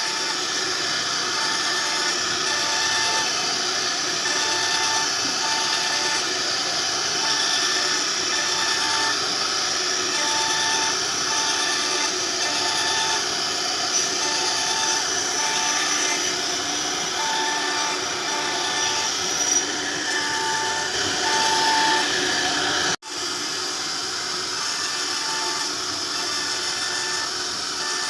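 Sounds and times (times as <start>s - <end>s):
workshop machinery running: 0.0s - 28.0s.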